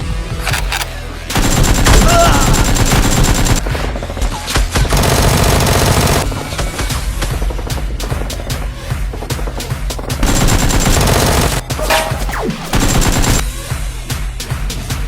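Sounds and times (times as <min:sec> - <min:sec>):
background music with low beat: 0:00.0 - 0:15.0
machine gun fire: 0:00.4 - 0:06.8, 0:10.2 - 0:13.4.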